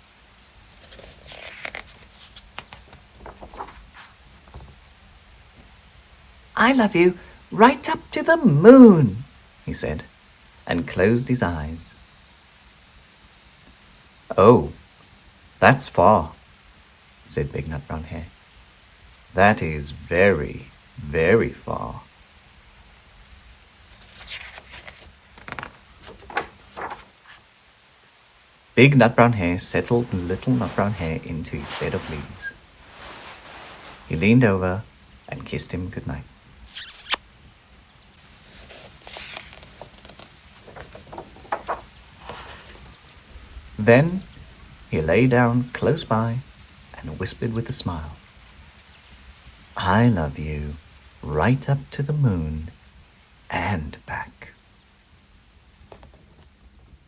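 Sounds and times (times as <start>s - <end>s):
crickets chirping: 0.0s - 57.0s
soft rustles and taps: 0.9s - 4.9s, 24.0s - 27.4s, 38.4s - 43.0s, 55.9s - 56.6s.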